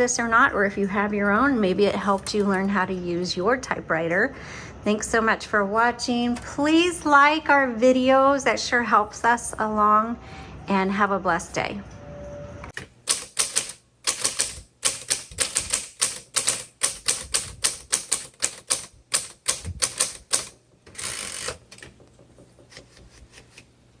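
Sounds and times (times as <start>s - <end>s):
typewriter keys striking: 12.8s - 23.1s.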